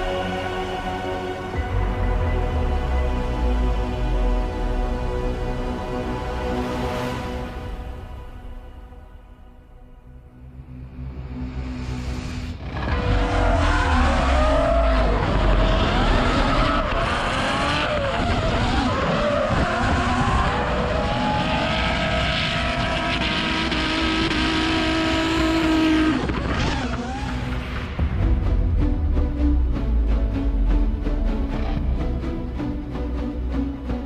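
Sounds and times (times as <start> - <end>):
car engine revving: 12.5 - 29.6.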